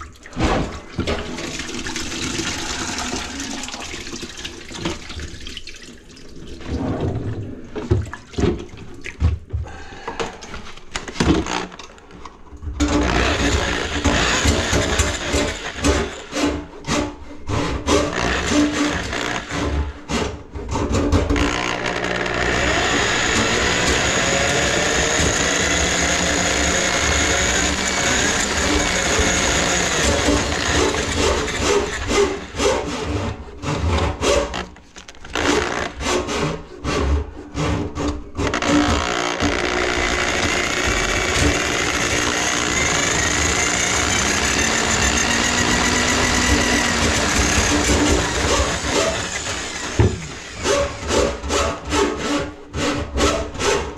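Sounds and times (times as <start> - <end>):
drain-clearing machine motor running: 21.5 - 32.6, 38.9 - 51.0.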